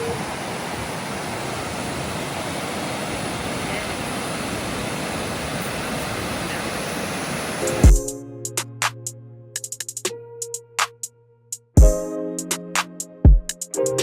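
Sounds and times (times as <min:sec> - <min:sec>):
waterfall rushing: 0:00.0 - 0:08.0.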